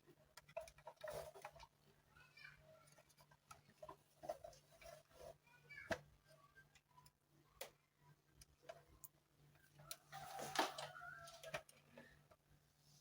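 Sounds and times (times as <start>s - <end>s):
faint clicks and knocks: 0.1s - 1.8s.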